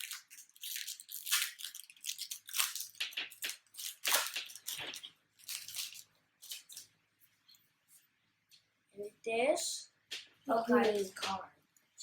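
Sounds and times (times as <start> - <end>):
foil wrapper crinkling: 0.0 - 7.0.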